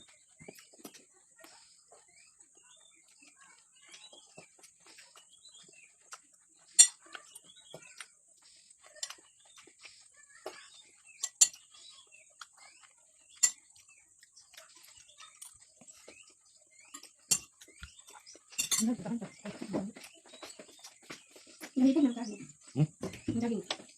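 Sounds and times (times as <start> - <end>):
birds chirping: 0.0 - 23.9
cutlery clinking on a plate: 6.7 - 7.0, 16.9 - 17.7, 18.5 - 19.0.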